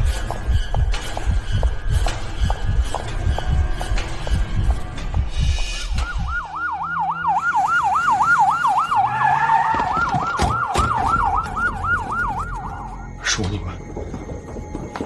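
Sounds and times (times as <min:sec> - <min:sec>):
second siren: 0:05.9 - 0:13.3
police siren yelping: 0:06.0 - 0:13.2.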